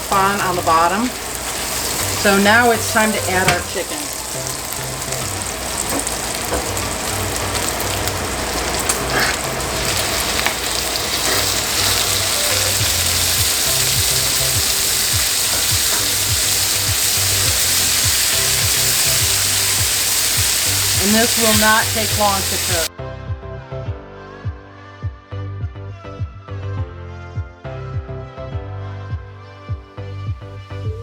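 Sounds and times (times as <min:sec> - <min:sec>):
bacon and chicken sizzling in pan: 0:00.0 - 0:22.9.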